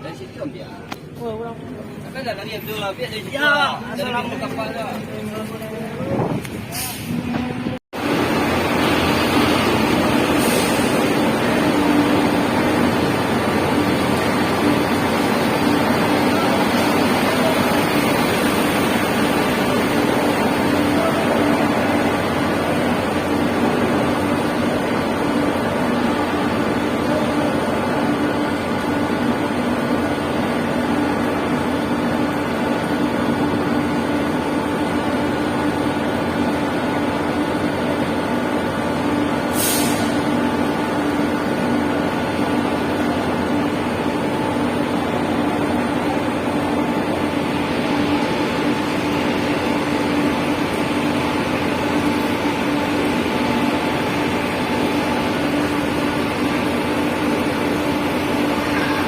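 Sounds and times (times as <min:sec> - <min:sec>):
bus engine humming: 0:00.0 - 0:59.0
air brake hiss: 0:06.7 - 0:07.2, 0:10.3 - 0:11.0, 0:39.5 - 0:40.3.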